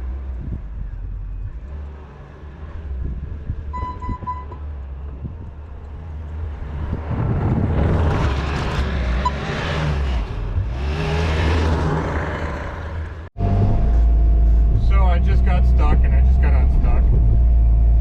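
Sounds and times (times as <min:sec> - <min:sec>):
skid steer engine revving: 0:06.5 - 0:18.0.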